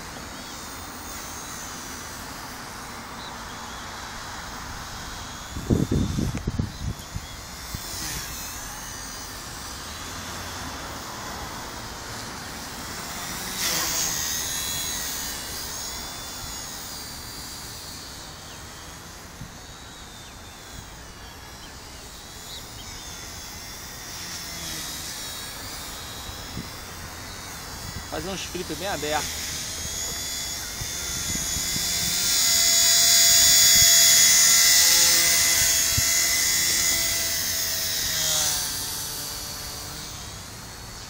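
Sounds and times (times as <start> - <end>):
toy helicopter rotors whining: 0.0 - 41.0
wind rumble on microphone: 4.8 - 8.4, 29.6 - 32.5.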